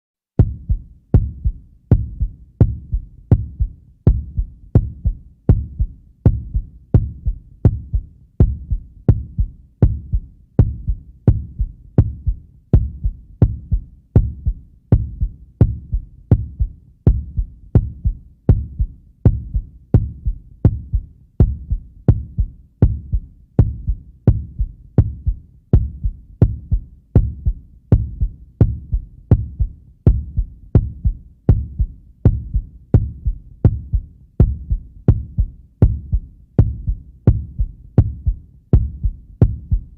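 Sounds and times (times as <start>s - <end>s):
heartbeat thumps: 0.4s - 39.9s.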